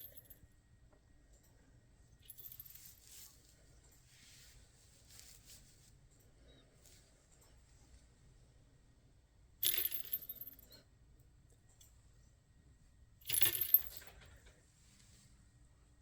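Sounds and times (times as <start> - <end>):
small bell jingling: 0.0 - 0.4, 2.2 - 3.4, 9.6 - 10.8, 13.2 - 14.1.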